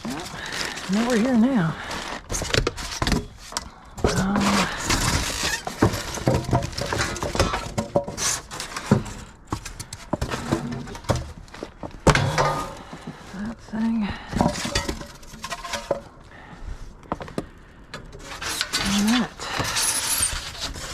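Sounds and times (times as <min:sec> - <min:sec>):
scrap metal clanking in dumpster: 0:12.0 - 0:12.9.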